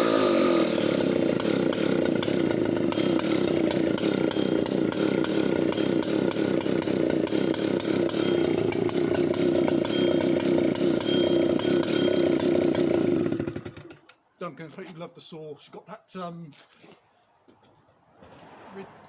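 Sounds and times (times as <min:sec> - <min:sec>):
chainsaw idling: 0:00.0 - 0:14.1.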